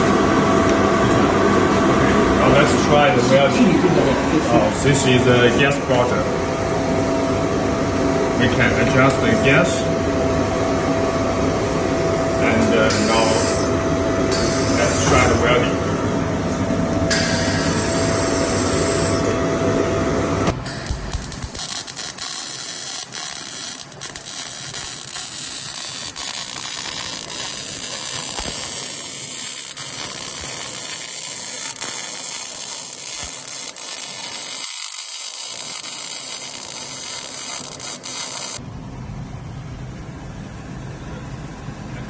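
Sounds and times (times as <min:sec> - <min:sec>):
low machine hum: 0:00.0 - 0:42.0
welding arc crackling hiss: 0:17.1 - 0:19.2, 0:20.4 - 0:38.6.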